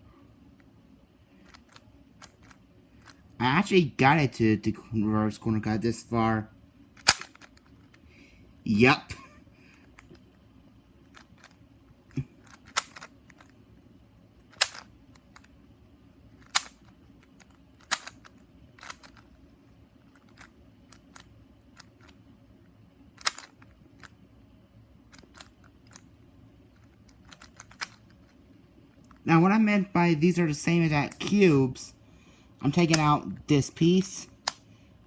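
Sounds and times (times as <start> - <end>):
speed cube clicks and snaps: 7.0 - 8.0, 11.1 - 13.6, 14.4 - 15.6, 16.4 - 19.4, 23.1 - 24.2, 25.1 - 26.1, 26.7 - 28.4, 32.8 - 33.1, 34.3 - 34.7.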